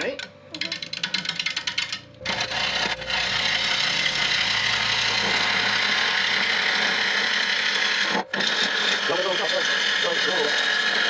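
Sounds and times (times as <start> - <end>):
gouge cutting wood on a lathe: 2.2 - 11.0.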